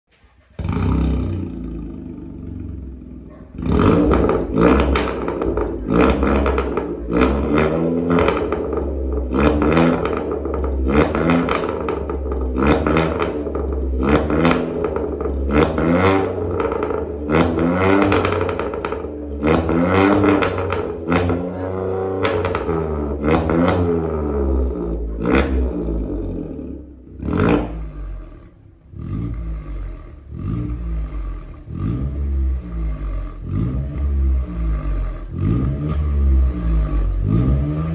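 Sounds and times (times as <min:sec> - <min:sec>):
car engine revving in blips: 0:00.1 - 0:37.9.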